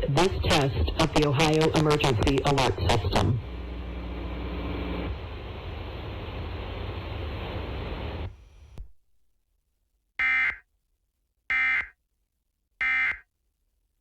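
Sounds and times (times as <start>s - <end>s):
harsh electronic data bursts: 12.8s - 13.2s.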